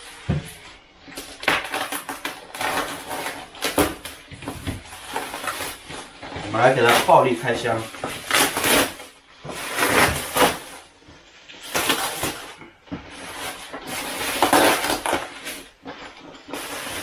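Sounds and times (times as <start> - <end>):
box tearing and scraping: 1.2 - 11.0, 11.6 - 17.0.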